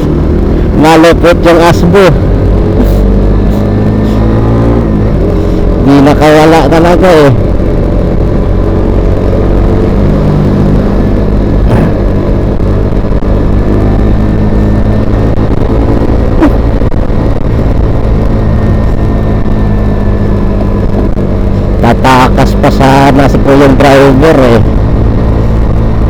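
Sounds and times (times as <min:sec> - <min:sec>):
motor vehicle engine running: 0:00.0 - 0:26.0.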